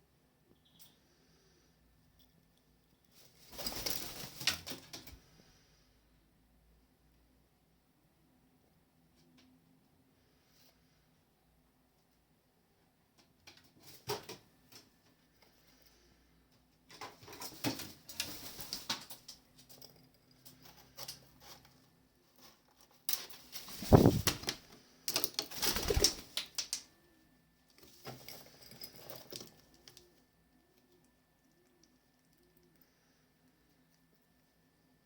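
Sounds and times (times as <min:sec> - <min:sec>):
birds flapping wings: 0:03.5 - 0:04.8, 0:23.5 - 0:24.6, 0:25.5 - 0:26.7.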